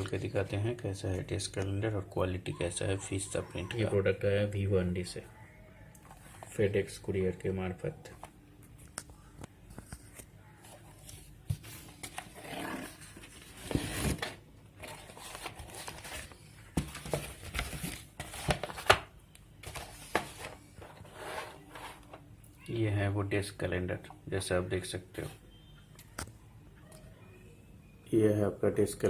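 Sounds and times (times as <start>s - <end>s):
packaging rustling and tearing: 11.8s - 20.6s.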